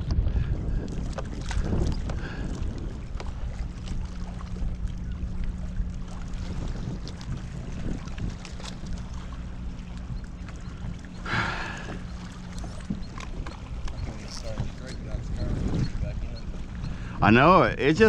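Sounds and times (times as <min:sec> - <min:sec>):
water against a kayak: 0:00.0 - 0:18.0
wind rumbling on microphone: 0:00.0 - 0:18.0
faint steady hum: 0:08.7 - 0:18.0
light knocks and clicks: 0:11.8 - 0:15.0.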